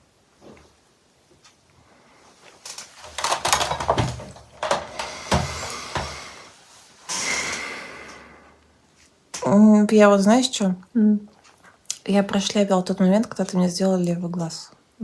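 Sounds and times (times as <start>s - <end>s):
rustling: 1.4s - 7.1s
handling clicks and knocks: 2.7s - 6.4s
short hiss: 5.1s - 8.3s.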